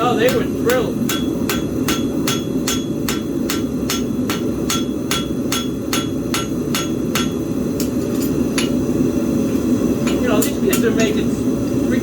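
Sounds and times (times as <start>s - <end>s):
hammer striking metal anvil: 0.2s - 8.8s.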